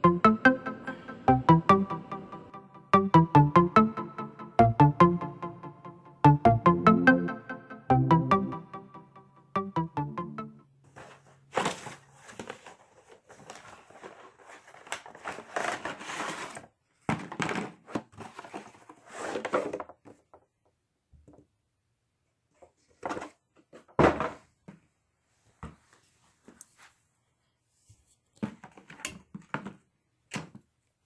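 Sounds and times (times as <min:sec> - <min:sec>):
packaging crinkling and rustling: 0:11.0 - 0:20.0.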